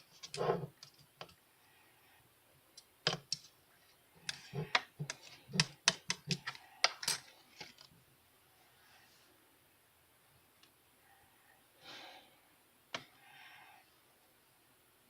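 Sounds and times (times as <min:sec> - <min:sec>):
sharp clicks and taps: 0:04.3 - 0:07.1.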